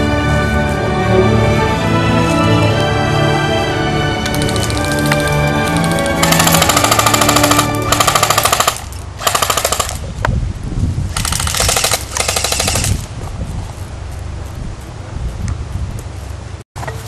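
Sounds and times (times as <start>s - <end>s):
airsoft guns firing on full auto: 4.3s - 10.1s, 11.1s - 13.1s.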